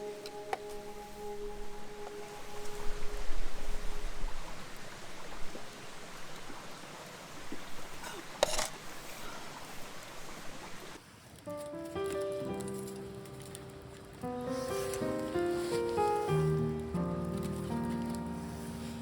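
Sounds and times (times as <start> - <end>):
wind rumble on microphone: 0.0 - 6.8
steady outdoor hiss: 0.0 - 19.0
sharp crackle: 11.2 - 19.0.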